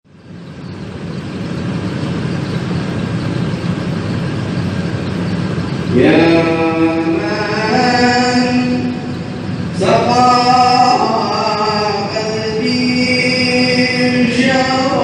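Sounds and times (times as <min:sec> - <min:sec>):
steady low hum and hiss: 0:00.1 - 0:15.0
man chanting: 0:05.9 - 0:15.0.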